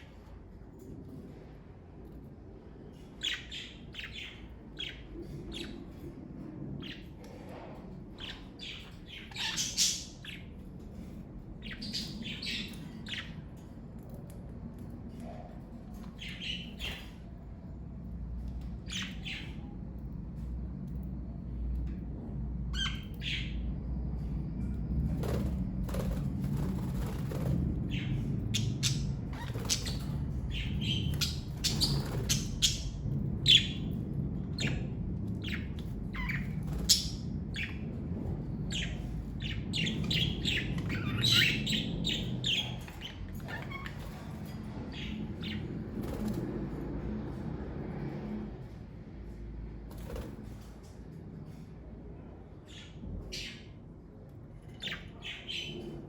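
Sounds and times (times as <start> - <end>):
low steady rumble: 0.0 - 56.0
budgerigars chirping and squawking: 3.2 - 6.0, 8.1 - 10.6, 11.6 - 13.4, 16.2 - 17.2, 18.8 - 19.6, 22.7 - 23.6, 26.0 - 33.9, 34.5 - 37.9, 38.7 - 46.2, 54.8 - 55.9.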